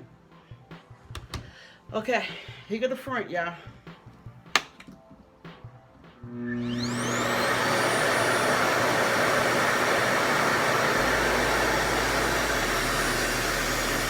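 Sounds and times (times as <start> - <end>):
hair dryer suction motor running: 6.3 - 14.0.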